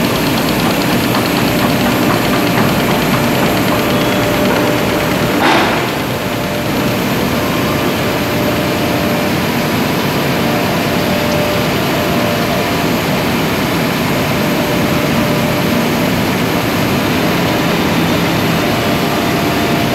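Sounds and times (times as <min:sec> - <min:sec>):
ice machine drone: 0:00.0 - 0:16.4.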